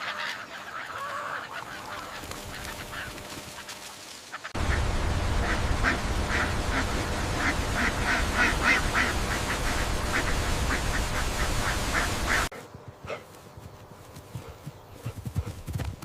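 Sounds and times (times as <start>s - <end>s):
ducks quacking: 0.0s - 13.2s
steady low rumble: 4.6s - 12.5s.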